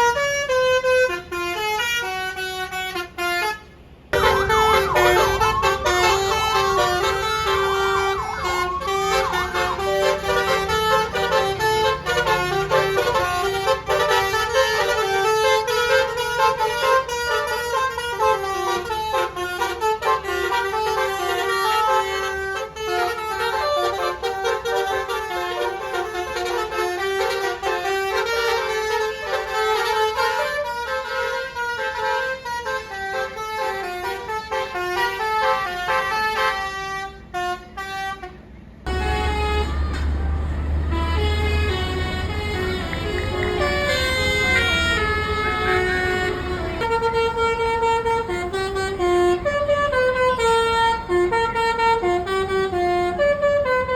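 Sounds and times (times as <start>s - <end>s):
bus horn playing a melody: 0.0s - 53.9s.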